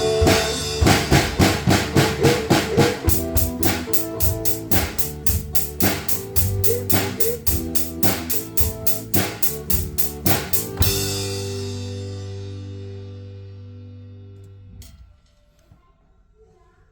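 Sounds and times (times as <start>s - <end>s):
guitar-pop song recording: 0.0s - 12.4s
drum kit playing: 0.0s - 13.3s.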